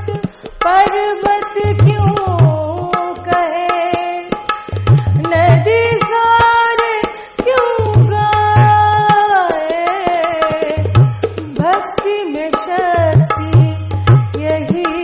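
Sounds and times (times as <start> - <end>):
tabla drumming: 0.0 - 15.0.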